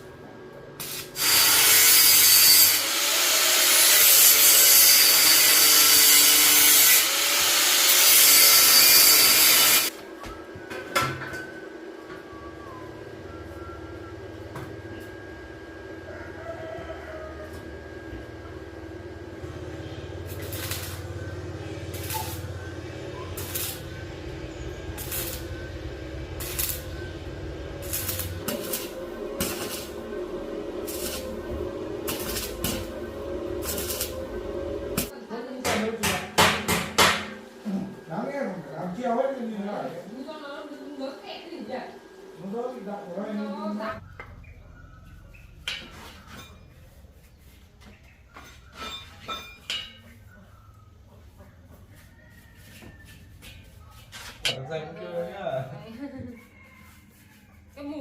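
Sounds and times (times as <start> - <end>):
steady low hum: 9.9 - 45.7.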